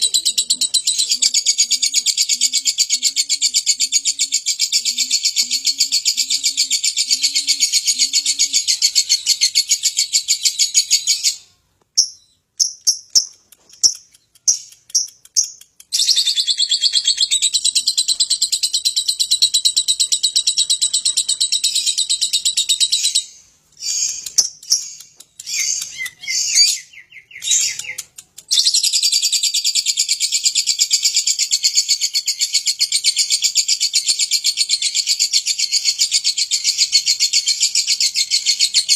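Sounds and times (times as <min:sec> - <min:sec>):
bird high trill chatter: 0:00.0 - 0:11.5.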